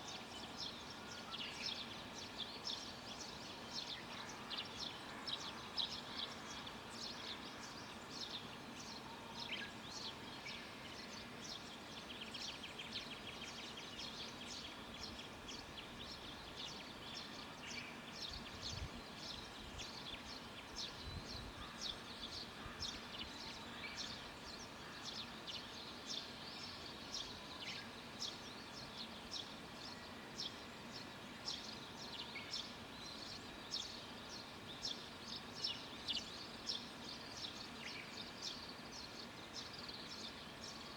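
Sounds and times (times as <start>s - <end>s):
faint rural background: 0.0s - 40.9s.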